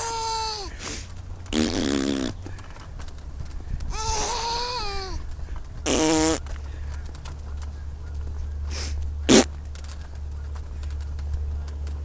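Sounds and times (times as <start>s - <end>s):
high vocal squeal: 0.0s - 0.7s, 3.9s - 5.2s
mouth fart noises: 1.5s - 2.4s, 3.9s - 5.2s, 5.8s - 6.5s, 8.7s - 9.5s.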